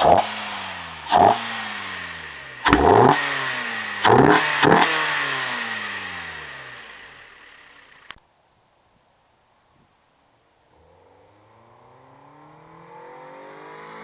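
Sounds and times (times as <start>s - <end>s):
car engine revving: 0.0s - 8.1s, 11.0s - 14.0s.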